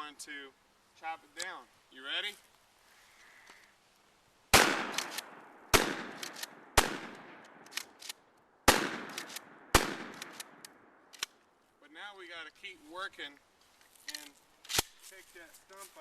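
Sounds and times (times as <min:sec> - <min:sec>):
shotgun firing: 0:04.5 - 0:08.0, 0:08.6 - 0:10.6.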